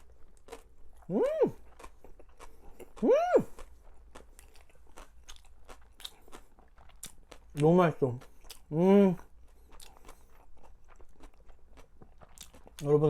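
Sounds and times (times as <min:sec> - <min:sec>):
chewing with crunchy bites: 0:00.0 - 0:13.0
person humming mmm: 0:01.0 - 0:01.6, 0:02.8 - 0:03.6.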